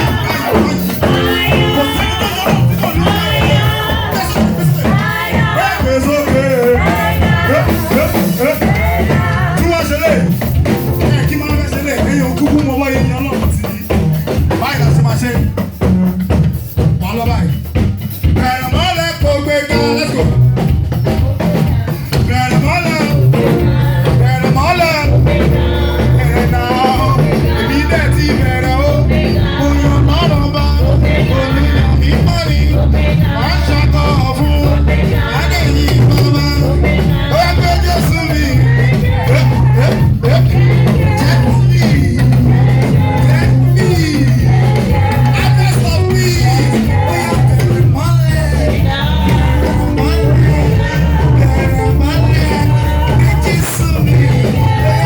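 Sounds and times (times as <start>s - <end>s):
percussion steady beat: 0.0s - 55.0s
singing with a band: 0.0s - 55.0s.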